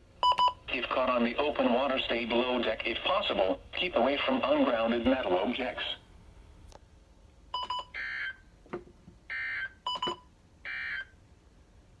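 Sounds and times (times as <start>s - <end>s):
short clicks and beeps: 0.2s - 0.6s, 7.6s - 7.9s, 9.9s - 10.3s.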